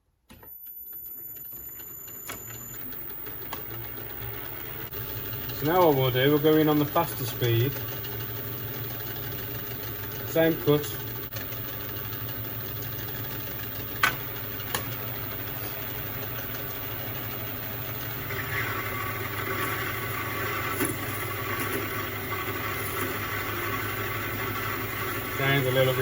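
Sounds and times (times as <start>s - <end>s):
milling machine motor hum: 0.8s - 26.0s
cutter grinding into metal: 18.2s - 26.0s.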